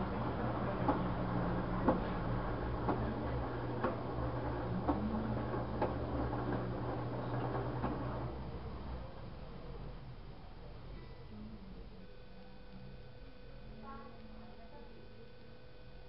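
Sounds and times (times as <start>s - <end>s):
washing machine drum clicking: 0.0s - 8.2s
washing machine motor hum: 0.0s - 16.0s.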